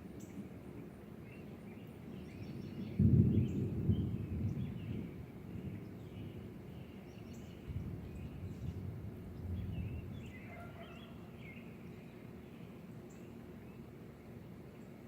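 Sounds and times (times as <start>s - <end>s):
low gusting rumble: 2.6s - 11.4s
bird chirping: 5.9s - 13.9s.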